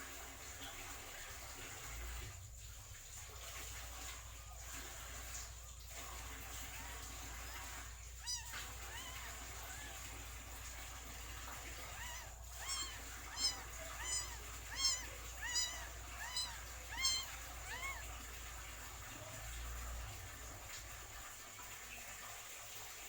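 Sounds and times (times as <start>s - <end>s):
kitten mewing: 6.6s - 10.3s, 11.5s - 19.4s.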